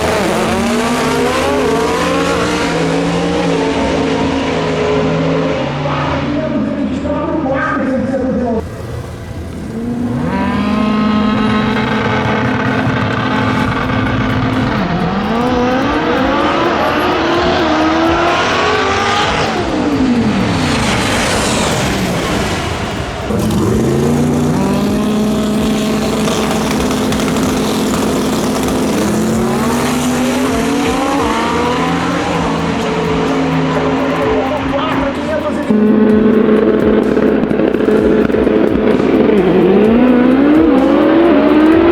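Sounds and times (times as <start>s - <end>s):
racing car engine revving: 0.0s - 41.9s.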